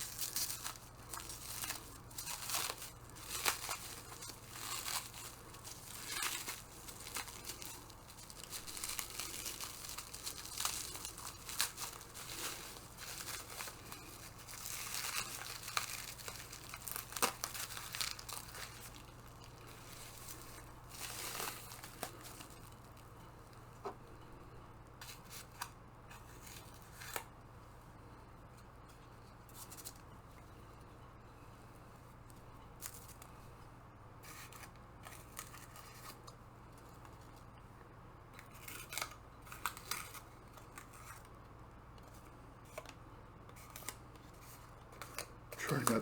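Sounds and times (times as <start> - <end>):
package being cut and unwrapped: 0.0 - 23.0, 38.4 - 41.3, 43.5 - 46.0.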